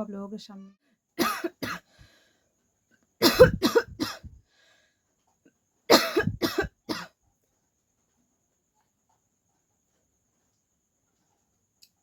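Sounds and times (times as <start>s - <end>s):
woman coughing: 1.2s - 1.9s, 3.2s - 4.4s, 5.9s - 7.1s.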